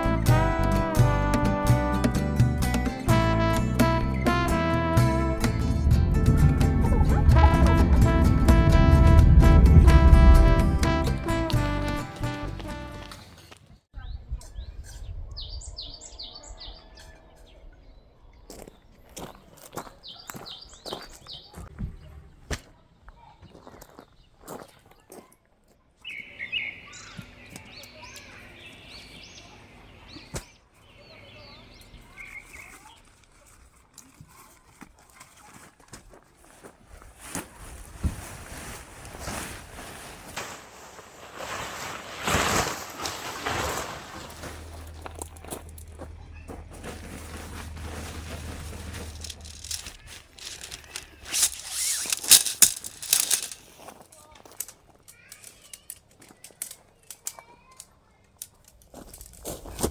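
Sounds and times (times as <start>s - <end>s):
birds chirping: 13.1s - 22.4s, 26.0s - 33.0s
crinkling and rustling: 32.3s - 59.9s
loud tearing hissing sound: 48.8s - 53.7s.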